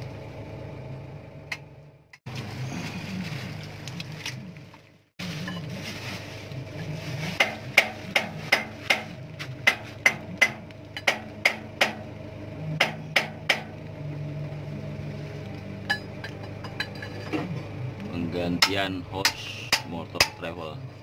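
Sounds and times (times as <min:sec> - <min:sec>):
steady engine hum: 0:00.0 - 0:21.0
hammer ringing on metal: 0:12.8 - 0:13.7.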